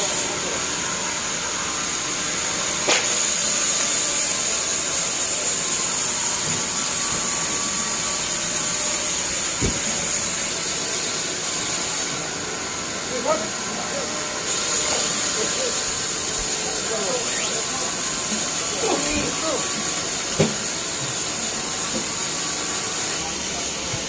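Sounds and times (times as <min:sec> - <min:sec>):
band saw cutting log: 0:02.9 - 0:12.3, 0:14.4 - 0:23.5.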